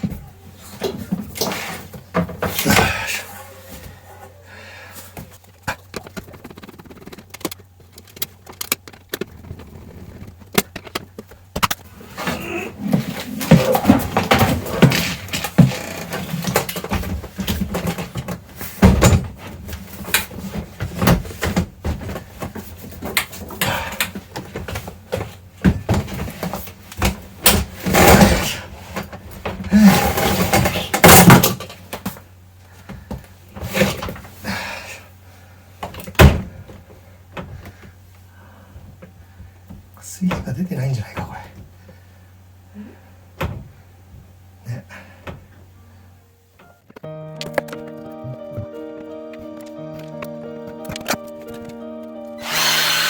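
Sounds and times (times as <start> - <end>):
appliance parts knocking and rattling: 10.3 - 32.2.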